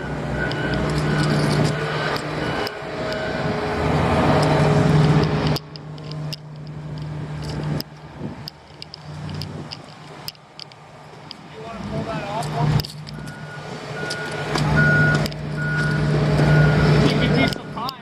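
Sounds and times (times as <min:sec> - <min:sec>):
diesel engine humming: 0:00.0 - 0:18.0
light clicks and rattles: 0:04.4 - 0:11.5.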